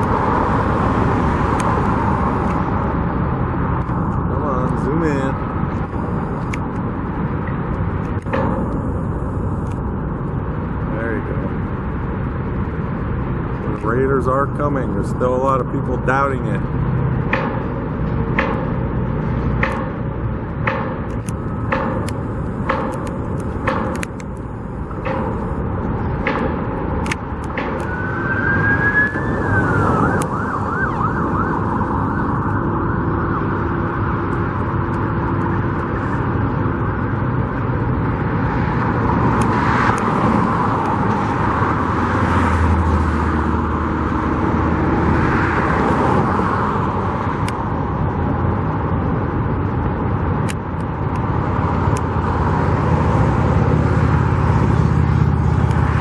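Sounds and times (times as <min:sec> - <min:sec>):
road traffic: 0:00.0 - 0:56.0
sharp knocks: 0:08.2 - 0:09.6, 0:17.2 - 0:30.5
emergency siren wailing: 0:27.6 - 0:37.2.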